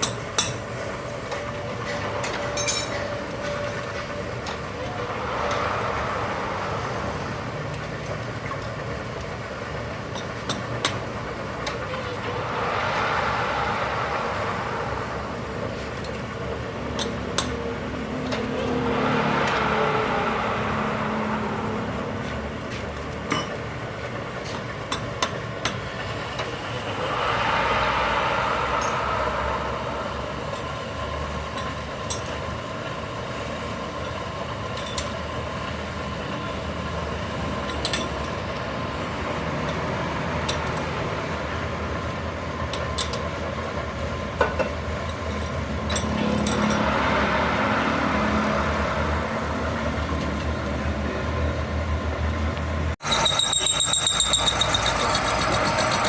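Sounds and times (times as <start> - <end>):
machine running: 0.7 - 24.3
light metal clinks and taps: 2.2 - 3.1.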